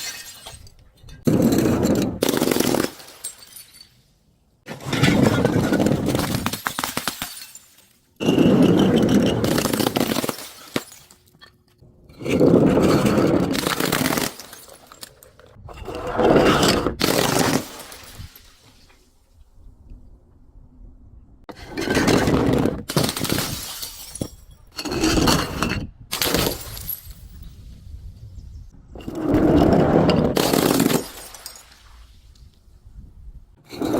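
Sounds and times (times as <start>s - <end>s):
glass shattering and crunching: 0.0s - 4.1s, 4.9s - 11.8s, 13.2s - 15.6s, 21.8s - 27.5s, 30.3s - 32.0s
glass crushing and breaking: 0.0s - 4.2s, 4.8s - 11.8s, 13.2s - 15.6s, 16.9s - 18.6s, 21.8s - 27.5s, 30.2s - 32.0s.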